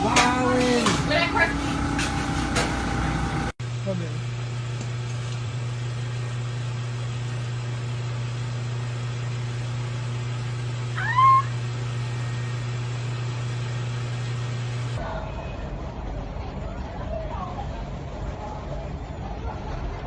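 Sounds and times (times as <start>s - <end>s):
meow-like call: 11.0s - 11.6s.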